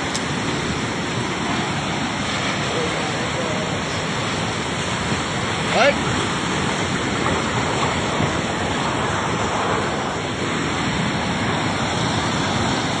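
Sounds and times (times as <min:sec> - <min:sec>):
flooded river rushing: 0:00.0 - 0:13.0.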